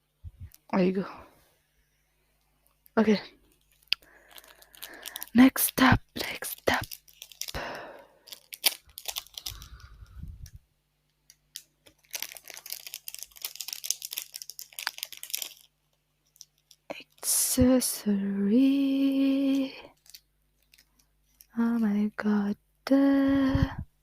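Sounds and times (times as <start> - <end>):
packaging torn and crinkled: 3.5 - 10.2, 11.2 - 17.2, 19.9 - 21.6
person humming: 18.4 - 19.8, 22.9 - 23.9.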